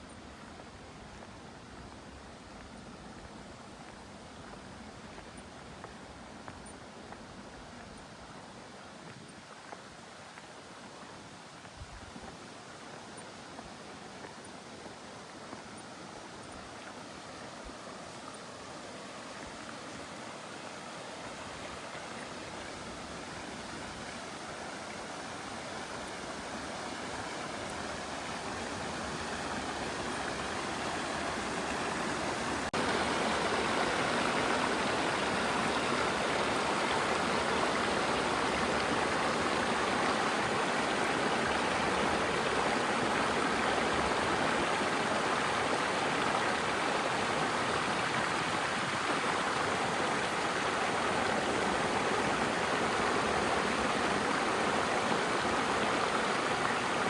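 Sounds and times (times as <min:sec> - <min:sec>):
stream water rushing: 0:00.0 - 0:57.0.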